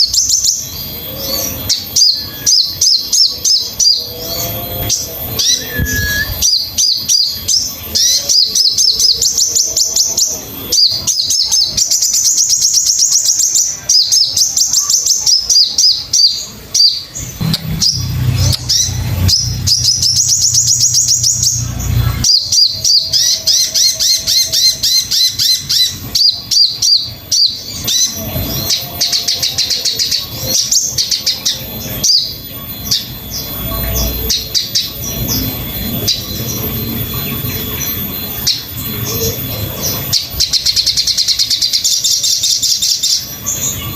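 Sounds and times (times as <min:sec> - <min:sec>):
bird chirping and trilling: 0:00.0 - 0:43.9
low hum: 0:16.0 - 0:29.1.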